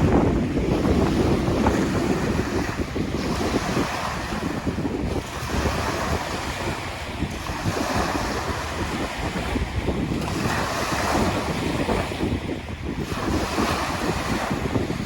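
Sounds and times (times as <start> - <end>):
waves lapping on shore: 0.0 - 15.0
wind buffeting microphone: 0.0 - 15.0.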